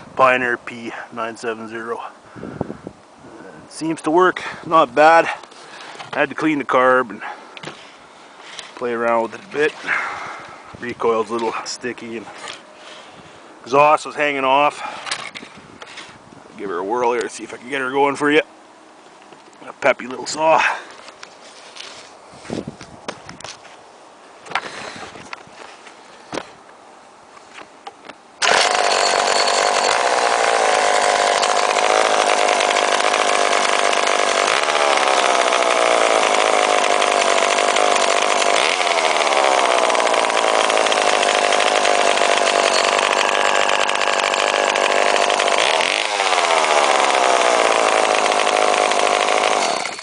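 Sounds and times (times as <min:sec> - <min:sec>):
two-stroke chainsaw revving: 0:28.4 - 0:50.0.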